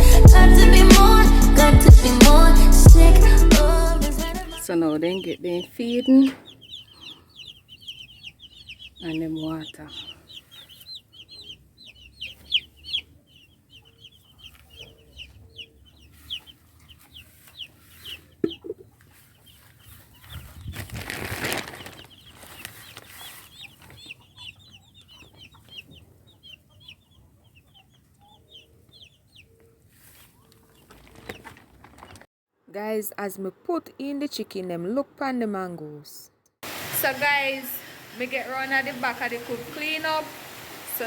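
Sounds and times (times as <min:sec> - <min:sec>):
chicks peeping: 0:02.8 - 0:32.2
rustling: 0:16.1 - 0:24.2, 0:29.6 - 0:32.3.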